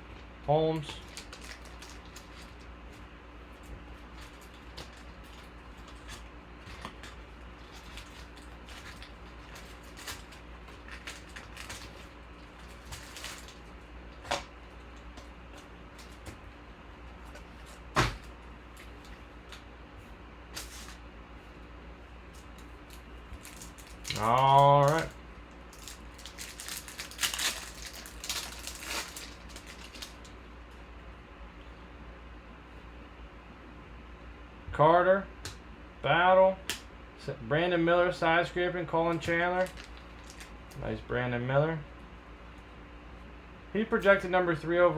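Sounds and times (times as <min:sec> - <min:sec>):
steady low hum: 0:00.0 - 0:44.9
wrapper crinkling: 0:00.8 - 0:02.7, 0:04.0 - 0:15.0, 0:22.4 - 0:30.4, 0:39.4 - 0:40.8.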